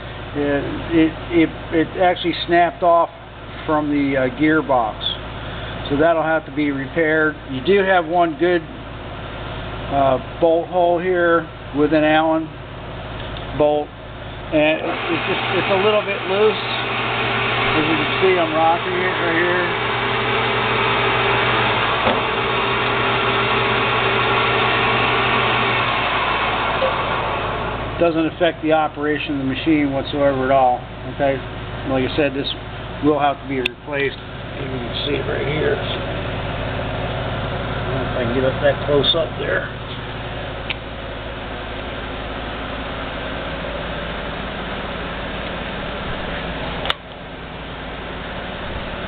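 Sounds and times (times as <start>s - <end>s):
machine humming drone: 14.0s - 49.0s.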